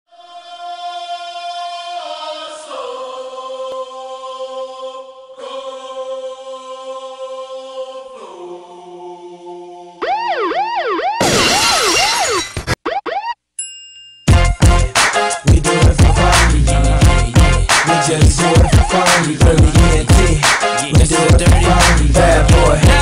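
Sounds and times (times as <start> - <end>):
choir-like synthesizer chords: 0.1 - 10.8, 15.2 - 23.0
wailing siren-like sweep: 10.0 - 11.3.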